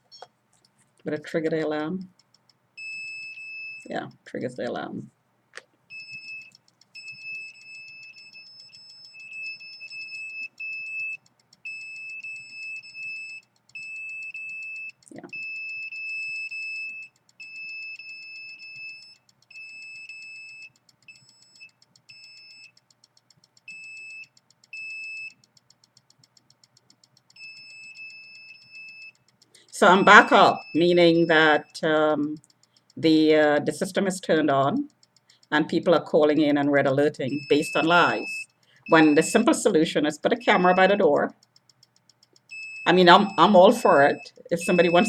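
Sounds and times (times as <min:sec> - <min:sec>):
electronic alarm beeping: 0:02.8 - 0:04.7, 0:05.9 - 0:22.8, 0:23.6 - 0:25.5, 0:27.3 - 0:32.4, 0:35.5 - 0:41.3, 0:42.5 - 0:45.0.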